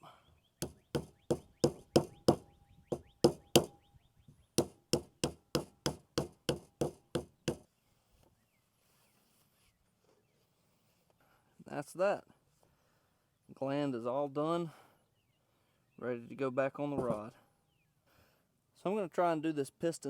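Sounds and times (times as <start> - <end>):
rubber mallet tapping: 0.6 - 3.8, 4.6 - 7.6.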